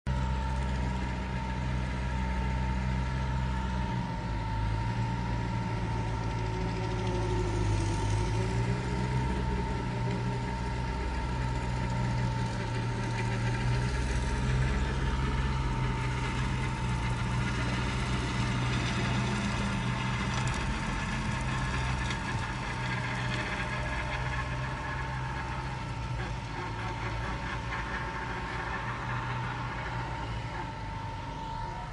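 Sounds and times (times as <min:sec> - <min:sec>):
tractor engine running: 0:00.1 - 0:31.9
high whine: 0:23.5 - 0:31.9.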